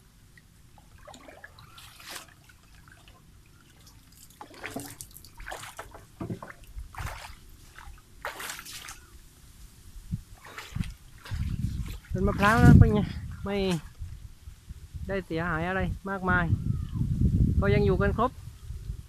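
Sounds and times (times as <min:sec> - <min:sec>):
splashing in shallow water: 0:00.3 - 0:09.5, 0:10.2 - 0:14.1.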